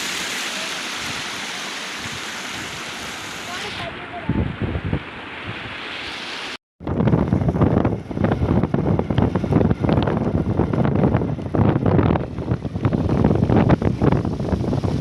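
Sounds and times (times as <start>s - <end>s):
wind buffeting microphone: 3.5s - 5.8s, 6.8s - 15.0s.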